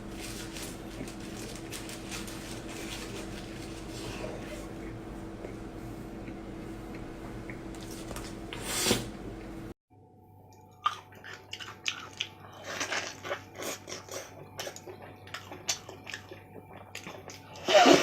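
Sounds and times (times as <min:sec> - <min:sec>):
background hum: 0:00.0 - 0:18.0
chewing and crunching: 0:10.8 - 0:17.8.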